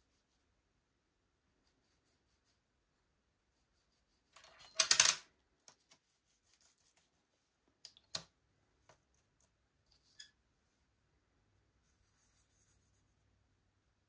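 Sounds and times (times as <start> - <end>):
clattering clicks of craft items: 4.4 - 5.8.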